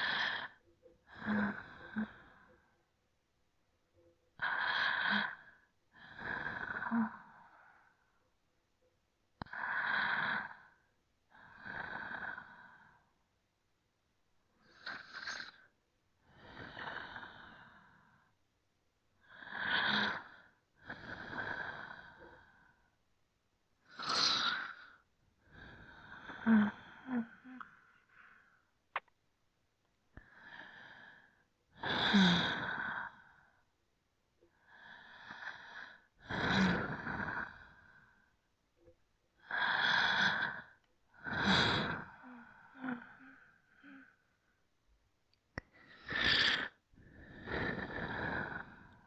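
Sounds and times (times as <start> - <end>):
person breathing deeply: 0.0 - 2.7.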